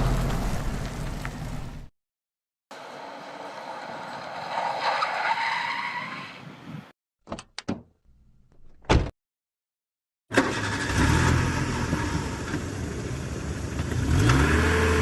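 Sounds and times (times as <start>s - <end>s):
car tyres skidding: 2.8s - 6.9s.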